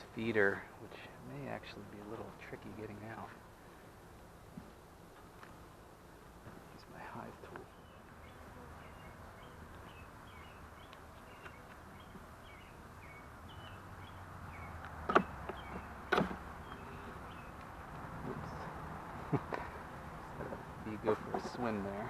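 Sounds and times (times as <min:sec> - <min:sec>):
honey bees buzzing: 0:00.0 - 0:22.0
hive tool knocking: 0:15.0 - 0:16.4.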